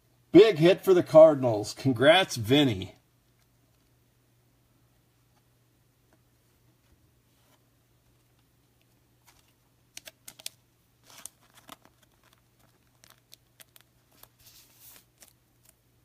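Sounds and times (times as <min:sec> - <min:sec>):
low steady hum: 0:00.0 - 0:16.0
cards and plastic clicking: 0:08.8 - 0:15.8
cards and plastic rustling: 0:09.2 - 0:15.8.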